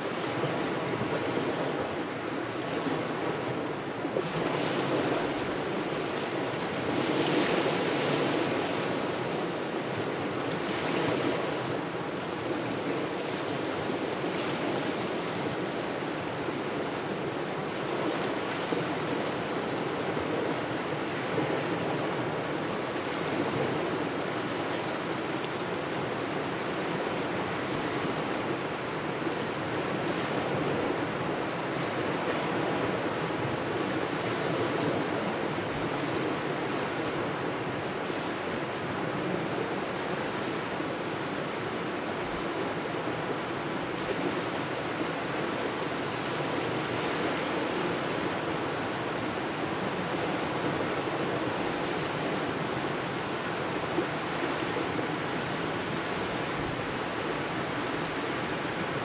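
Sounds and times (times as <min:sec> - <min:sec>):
small waves washing ashore: 0:00.0 - 0:59.0.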